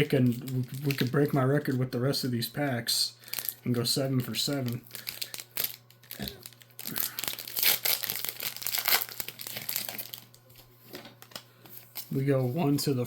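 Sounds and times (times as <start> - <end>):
foil wrapper tearing and crinkling: 0.0 - 1.8, 4.2 - 12.2.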